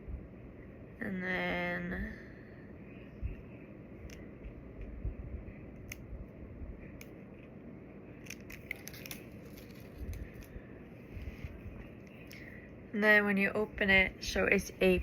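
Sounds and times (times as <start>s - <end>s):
packaging clicks and crinkles: 8.2s - 10.6s.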